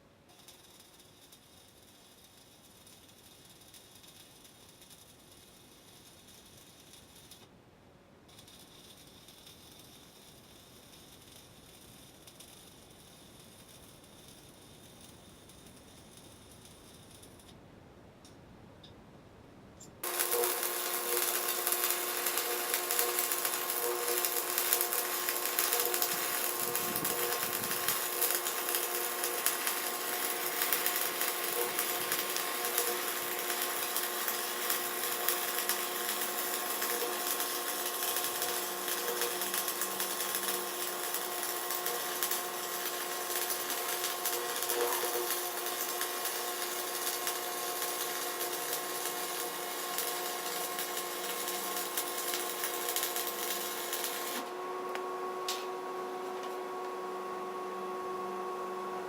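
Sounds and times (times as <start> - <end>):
power grinder grinding steel: 20.0 - 55.0.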